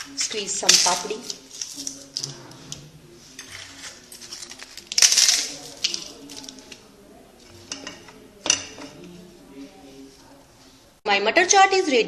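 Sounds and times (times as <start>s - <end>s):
crisp crackers crunching by hand: 0.7s - 2.5s, 3.4s - 6.8s.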